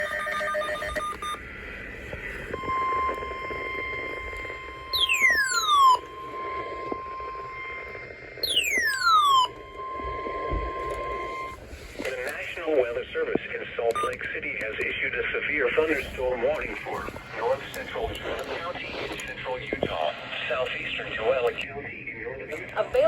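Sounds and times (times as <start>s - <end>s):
digital data tones: 2.5s - 11.6s, 13.9s - 14.2s
steady alert tone: 8.4s - 9.6s.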